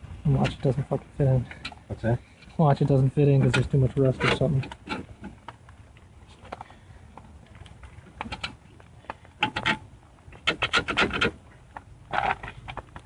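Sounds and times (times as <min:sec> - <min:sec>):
metal parts clicking and scraping: 0:09.2 - 0:11.4.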